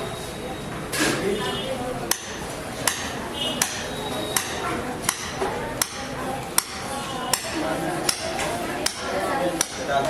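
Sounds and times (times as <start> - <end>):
murmur of voices: 0.0 - 10.0
ringing metallic taps: 2.1 - 6.0.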